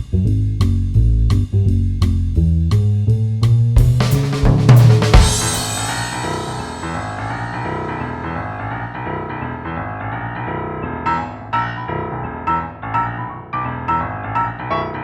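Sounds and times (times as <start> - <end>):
steady keyboard bed: 3.8 - 7.9
struck piano-like notes: 3.8 - 15.0.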